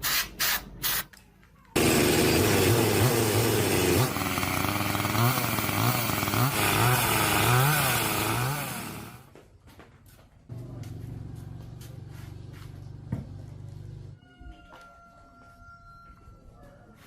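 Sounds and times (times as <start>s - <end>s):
chainsaw engine revving: 1.8s - 9.3s.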